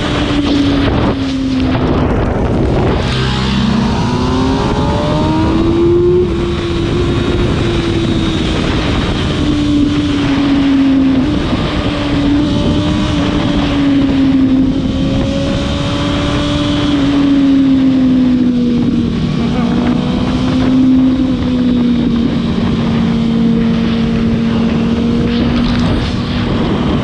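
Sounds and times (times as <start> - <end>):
motorcycle engine revving: 0.0 - 27.0
wind rushing over microphone: 0.0 - 27.0.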